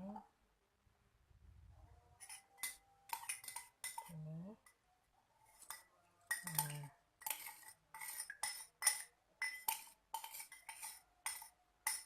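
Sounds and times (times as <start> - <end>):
spoon clinking in a strainer: 2.2 - 4.1, 5.6 - 12.0.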